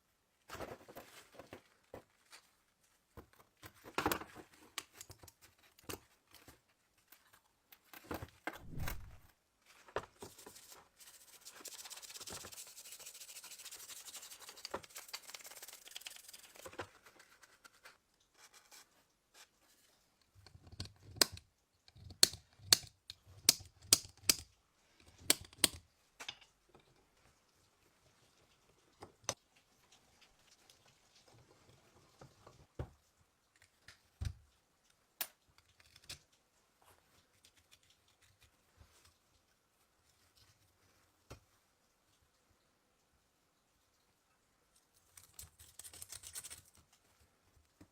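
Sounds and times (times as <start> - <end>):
scratchy hiss: 10.2 - 20.1.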